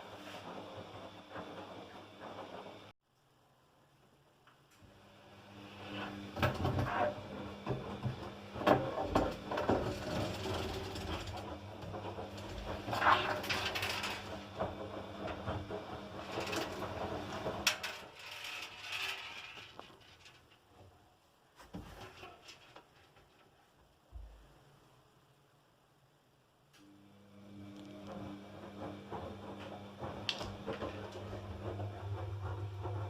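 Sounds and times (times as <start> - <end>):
tumble dryer motor hum: 5.2 - 18.3, 27.1 - 33.0
clicks and knocks in dryer drum: 5.9 - 21.0, 28.1 - 33.0.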